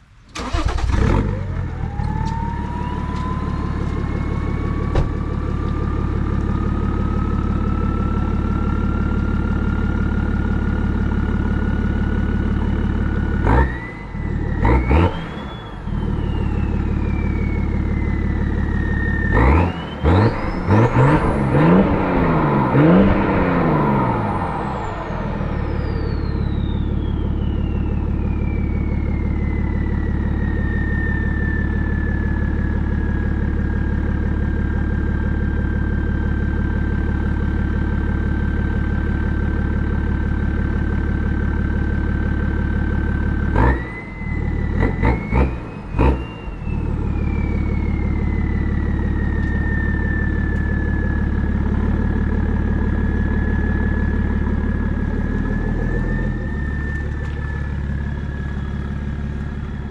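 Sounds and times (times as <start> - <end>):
diesel engine idling: 0.0 - 59.9
engine throttle blips: 0.0 - 59.9
high turbo whistle: 1.8 - 8.3, 13.5 - 33.7, 44.0 - 59.9.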